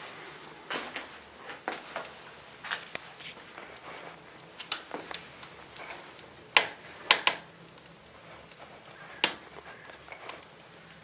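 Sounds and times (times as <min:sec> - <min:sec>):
sharp clicks and knocks: 0:04.5 - 0:10.7.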